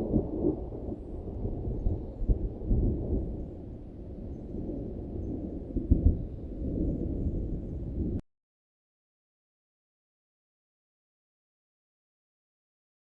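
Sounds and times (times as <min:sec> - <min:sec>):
rolling thunder: 0:00.0 - 0:08.2.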